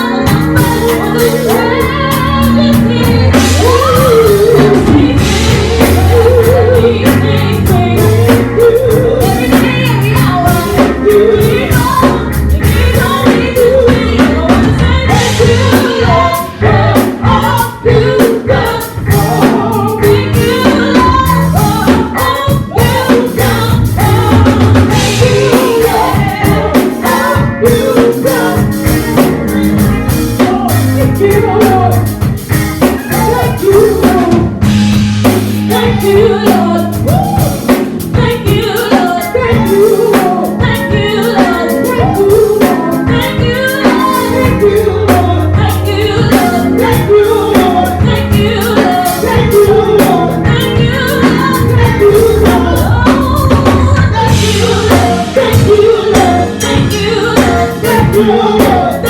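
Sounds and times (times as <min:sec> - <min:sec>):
band with drum kit and bass: 0:00.0 - 0:59.0
gospel singing: 0:00.0 - 0:59.0.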